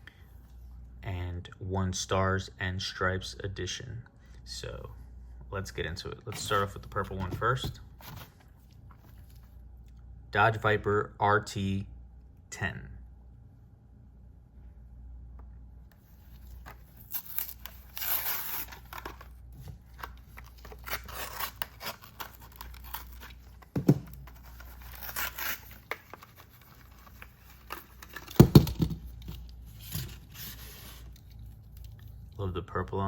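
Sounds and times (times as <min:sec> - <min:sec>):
plastic blister crinkling: 0:16.3 - 0:32.3
cardboard ripping: 0:16.4 - 0:28.9.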